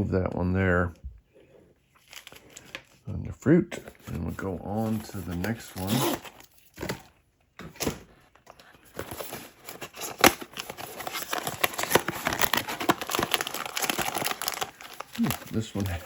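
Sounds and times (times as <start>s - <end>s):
wrapping crinkling and tearing: 1.9s - 3.0s, 4.0s - 7.1s, 8.5s - 16.0s.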